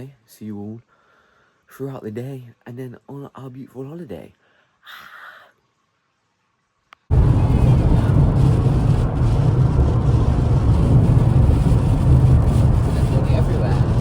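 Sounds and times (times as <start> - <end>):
car road and engine rumble: 7.1 - 14.0.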